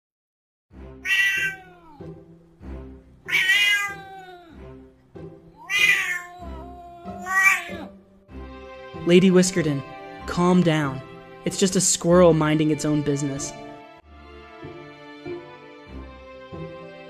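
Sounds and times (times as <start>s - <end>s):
light background music: 0.7s - 17.0s
cat meowing: 1.0s - 2.3s, 3.2s - 4.8s, 5.5s - 8.0s.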